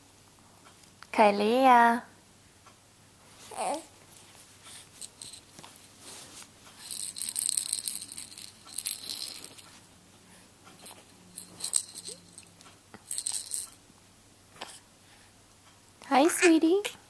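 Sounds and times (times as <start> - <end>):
high rattling: 5.0 - 5.5, 6.8 - 9.7, 11.3 - 13.8.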